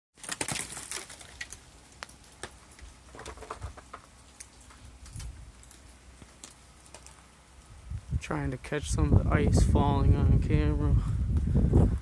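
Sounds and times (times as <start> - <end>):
ice falling from branches: 0.2 - 7.3.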